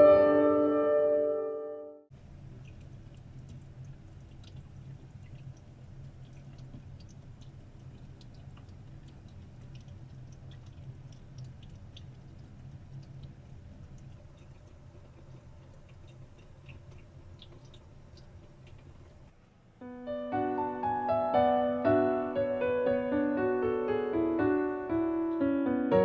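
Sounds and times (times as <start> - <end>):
faint water dripping: 2.1 - 19.4
steady low hum: 2.2 - 20.0.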